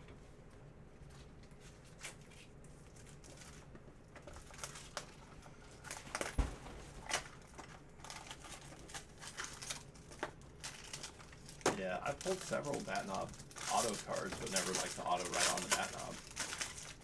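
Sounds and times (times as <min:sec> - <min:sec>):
card packaging rustling: 0:05.8 - 0:17.0
heavy thump on table: 0:06.3 - 0:07.0.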